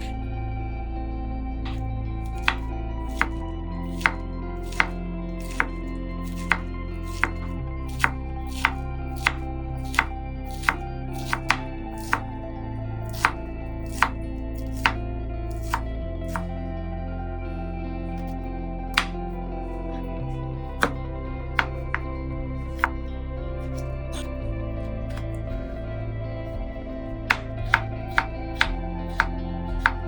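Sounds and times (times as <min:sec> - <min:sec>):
soft background music: 0:00.0 - 0:30.0
knife chopping on cutting board: 0:01.7 - 0:12.3, 0:13.1 - 0:16.5, 0:19.0 - 0:19.3, 0:20.7 - 0:21.0, 0:21.6 - 0:22.1, 0:22.7 - 0:23.0, 0:23.6 - 0:24.3, 0:25.1 - 0:25.8, 0:27.3 - 0:30.0.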